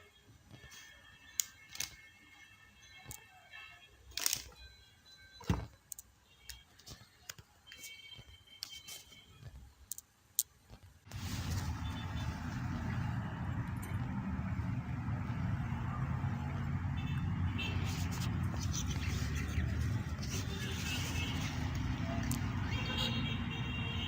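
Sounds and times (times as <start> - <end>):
small birds chirping: 18.0 - 22.9.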